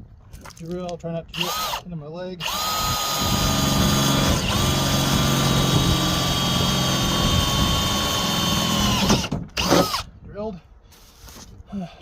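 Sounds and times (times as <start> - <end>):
power drill drilling through metal: 1.4 - 1.8, 2.4 - 10.1.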